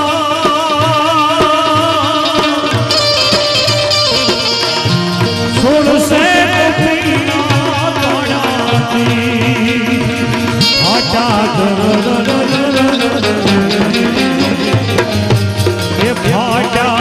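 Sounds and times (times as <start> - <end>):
tabla rhythm: 0.0 - 17.0.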